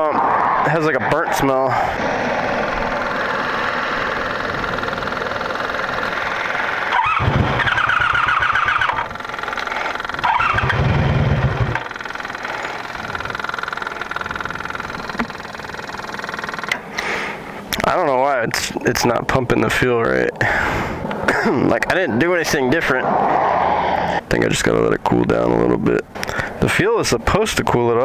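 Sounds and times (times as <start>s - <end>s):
motorcycle engine cranking: 2.2s - 17.1s.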